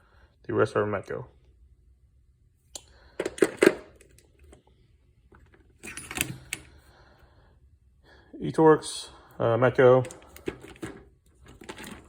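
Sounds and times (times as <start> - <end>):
metal sockets clinking: 5.8 - 6.7.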